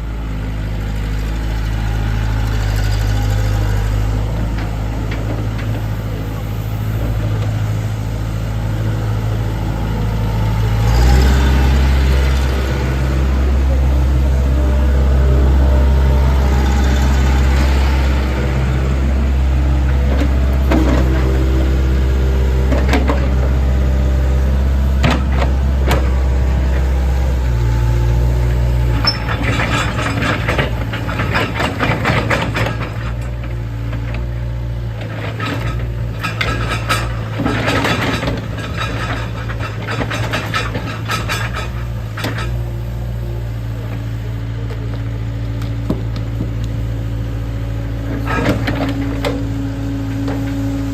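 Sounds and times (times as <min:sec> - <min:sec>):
excavator diesel engine running: 0:00.0 - 0:50.9
metal clanks and clicks: 0:29.0 - 0:34.2, 0:35.0 - 0:42.7.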